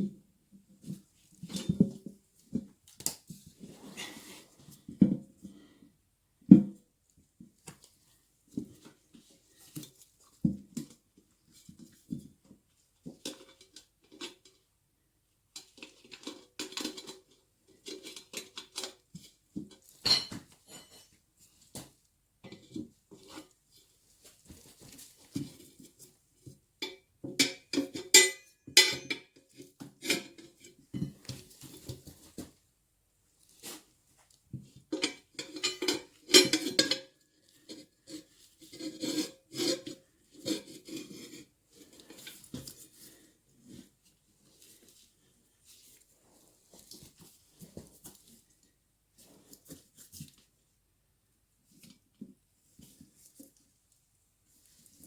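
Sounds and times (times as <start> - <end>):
tools knocking and clinking: 26.8 - 29.4, 35.0 - 37.1.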